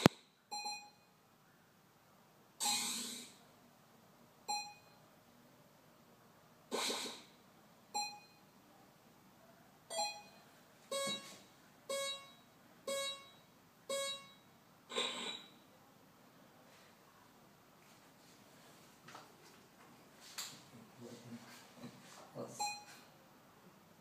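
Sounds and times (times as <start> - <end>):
electronic blips and bleeps: 2.6 - 3.3
noisy electronic bursts: 2.6 - 3.4.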